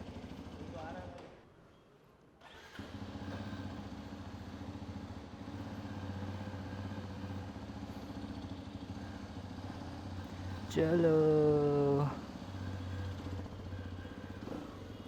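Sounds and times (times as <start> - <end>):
motorcycle engine idling: 0.0 - 1.2, 2.8 - 15.0.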